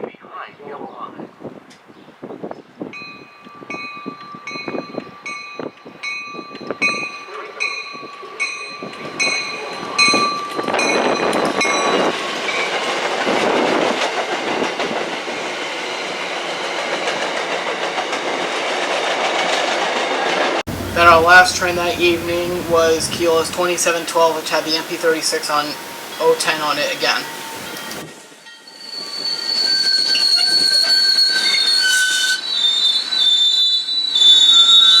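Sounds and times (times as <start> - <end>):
train rushing past: 8.8 - 32.0
train wheels clicking on rail joints: 8.9 - 28.1
bell ringing: 20.7 - 29.0.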